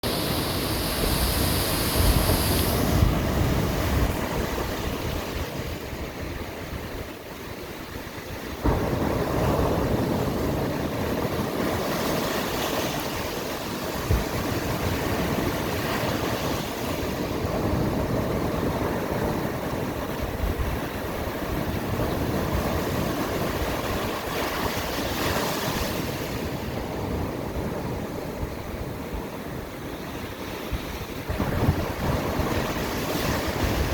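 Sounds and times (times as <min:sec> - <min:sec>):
waves breaking on shore: 0:00.0 - 0:33.9
wind buffeting microphone: 0:00.0 - 0:33.9.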